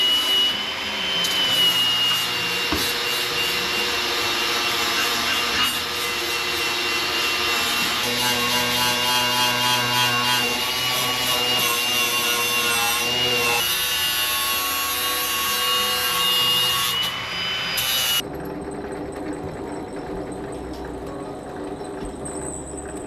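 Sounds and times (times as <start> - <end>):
power tool grinding metal: 0.0 - 18.2.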